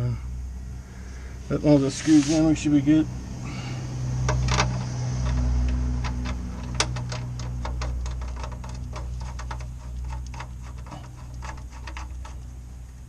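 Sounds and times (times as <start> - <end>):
steady low hum: 0.0 - 13.0
ratchet wrench clicking: 4.2 - 12.4.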